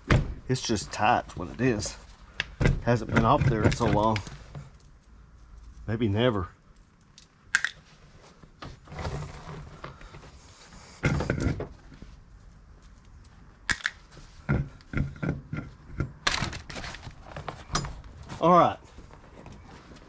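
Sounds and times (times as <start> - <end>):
metal tools clinking: 2.9 - 7.9, 12.8 - 14.2.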